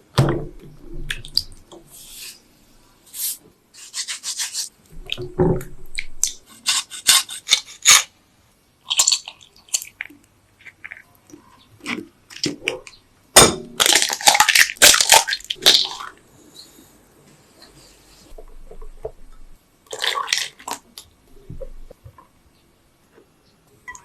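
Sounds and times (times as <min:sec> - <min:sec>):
food crunching: 0:08.9 - 0:12.9, 0:13.8 - 0:16.2.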